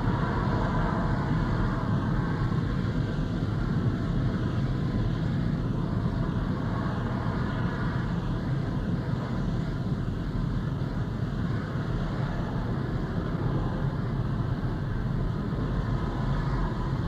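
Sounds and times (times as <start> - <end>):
noisy hiss: 0.0 - 17.0.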